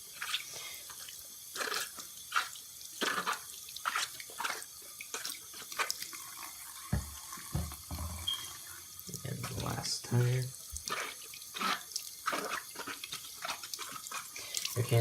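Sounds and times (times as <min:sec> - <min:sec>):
tap water splashing on rubber: 0:06.9 - 0:08.1.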